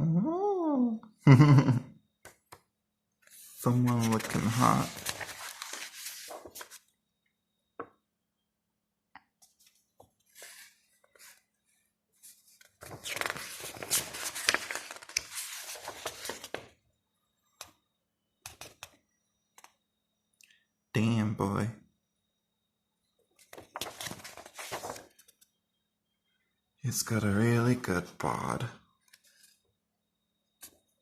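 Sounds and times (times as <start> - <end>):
paper pages rustling: 3.2 - 6.9, 9.4 - 11.4, 12.2 - 16.7, 23.4 - 25.4.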